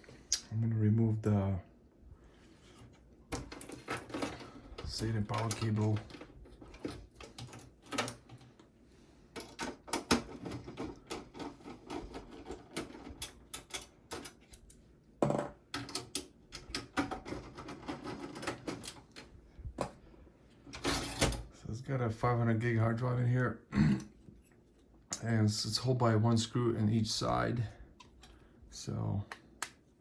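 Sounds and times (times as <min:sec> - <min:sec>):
plastic and metal clicks and rattles: 0:03.3 - 0:08.7, 0:09.4 - 0:14.8.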